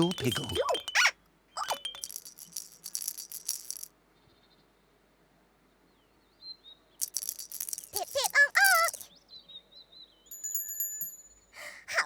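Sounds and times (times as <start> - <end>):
shaker-like rattling: 0.0 - 1.0, 1.6 - 3.9, 7.0 - 9.1, 10.3 - 11.4
faint high bird chirps: 0.0 - 2.8.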